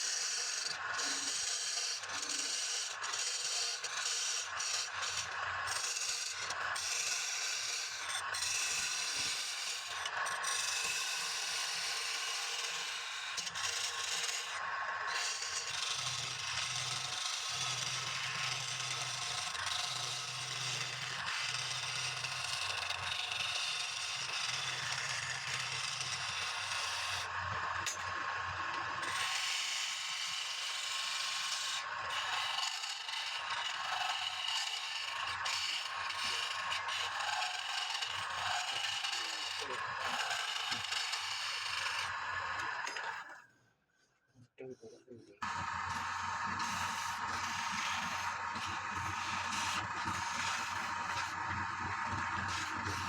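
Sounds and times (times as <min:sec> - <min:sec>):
lathe tool scraping wood: 0:45.4 - 0:53.0.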